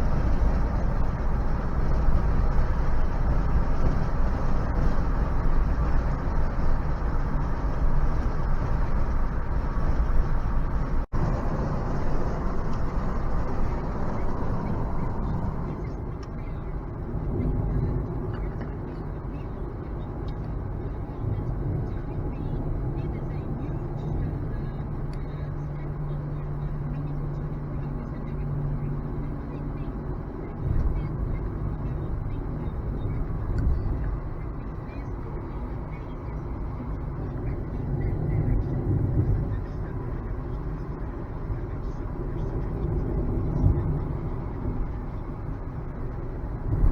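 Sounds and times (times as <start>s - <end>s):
wind rush: 0.0s - 15.9s, 46.5s - 46.9s
road and tyre noise: 0.0s - 46.9s.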